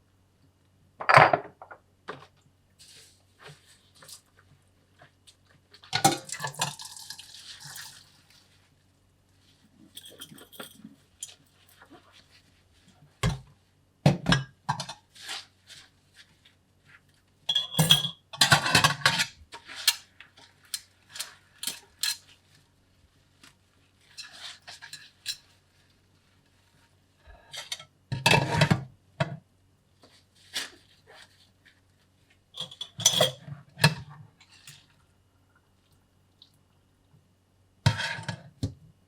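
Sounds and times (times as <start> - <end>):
cutlery and dishes clinking: 17.5 - 20.0, 20.7 - 22.3, 32.6 - 33.4.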